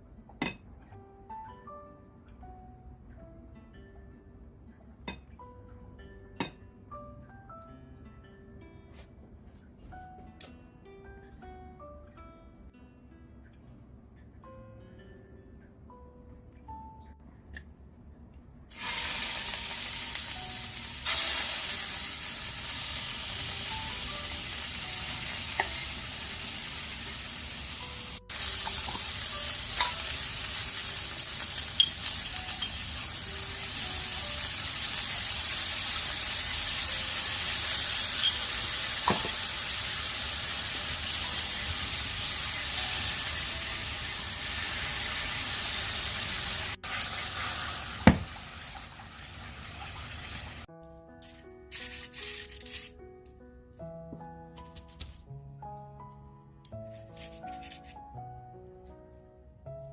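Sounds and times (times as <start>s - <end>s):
chicken sizzling in frying pan: 18.7s - 50.7s.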